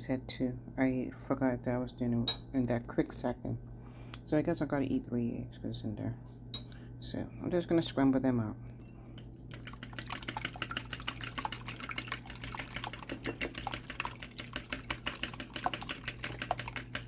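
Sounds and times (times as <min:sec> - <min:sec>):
utensil clicking against bowl: 0:09.5 - 0:17.0.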